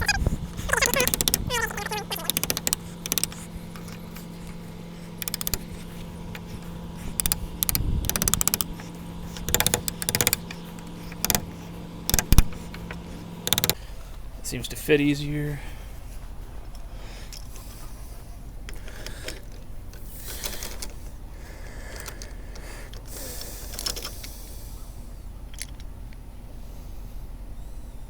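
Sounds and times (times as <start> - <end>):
clicking and scraping on latch: 0.0 - 4.6, 5.2 - 13.8
steady low hum: 0.0 - 28.0.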